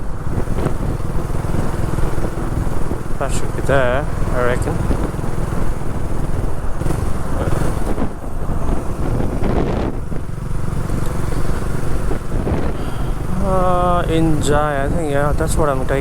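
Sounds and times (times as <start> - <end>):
motorcycle engine running: 0.0 - 16.0
wind buffeting microphone: 0.0 - 16.0.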